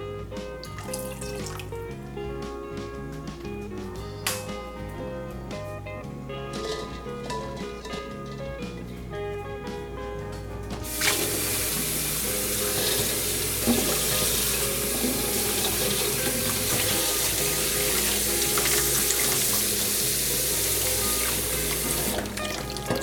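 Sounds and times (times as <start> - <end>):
soft background music: 0.0 - 23.0
water running from a tap: 0.6 - 1.9, 10.8 - 23.0.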